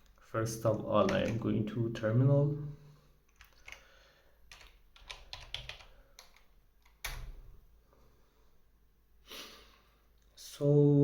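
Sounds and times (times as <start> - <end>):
typing on computer keyboard: 1.0 - 1.5, 3.3 - 3.8, 4.5 - 7.3.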